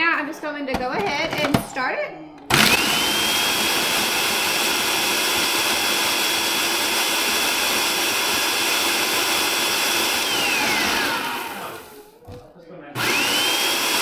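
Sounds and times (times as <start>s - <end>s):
food processor motor whine: 2.5s - 12.1s, 13.0s - 14.0s.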